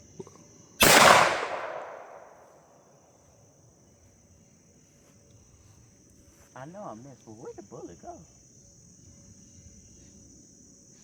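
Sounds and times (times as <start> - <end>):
pistol shot echoing: 0.8 - 2.4
high-pitched insect trill: 3.0 - 11.0.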